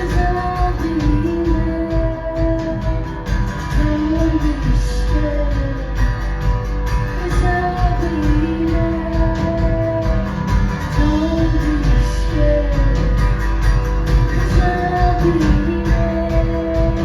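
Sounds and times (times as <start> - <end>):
strummed guitar with beat: 0.0 - 17.0
woman singing long notes: 14.4 - 17.0.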